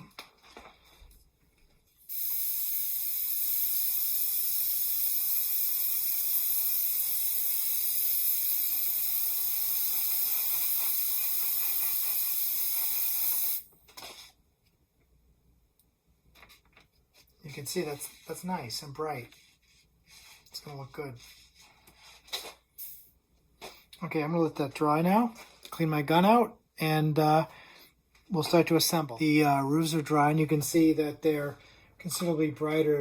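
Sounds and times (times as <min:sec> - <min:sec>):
airbrush spraying: 0:02.0 - 0:13.7.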